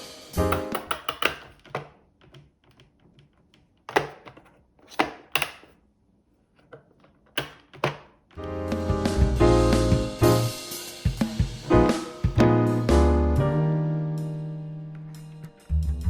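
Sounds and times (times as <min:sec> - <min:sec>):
sharp clicks and knocks: 0:00.5 - 0:05.8.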